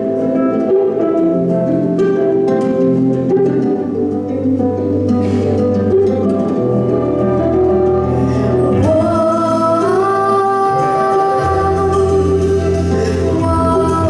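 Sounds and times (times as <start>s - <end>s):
held chords: 0.0s - 14.0s
plucked string notes: 0.0s - 14.0s
sustained low bass: 5.1s - 9.8s.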